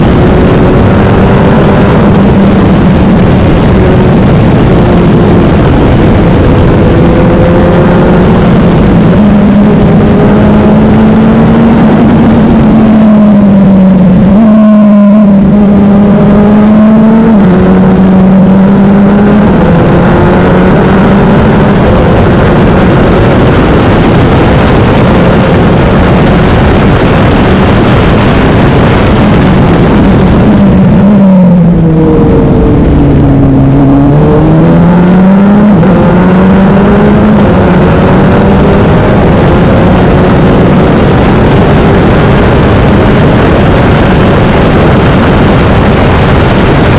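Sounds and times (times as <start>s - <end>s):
race car engine at full throttle: 0.0s - 46.9s.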